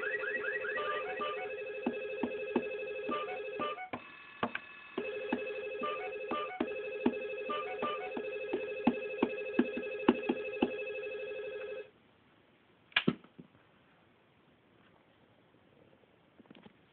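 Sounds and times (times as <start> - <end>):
ringing electronic tone: 0.0 - 11.9.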